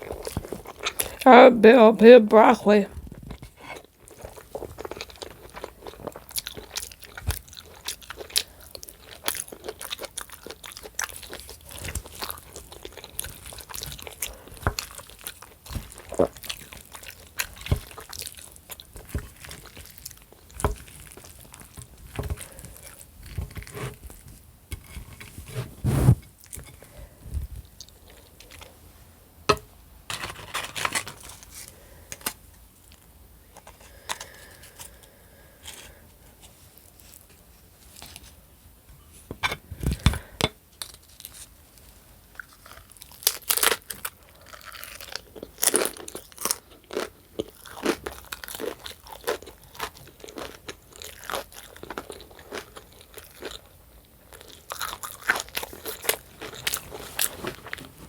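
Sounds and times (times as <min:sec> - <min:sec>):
person chewing crunchy food: 0:00.0 - 0:01.2, 0:03.2 - 0:24.3, 0:42.3 - 0:58.0.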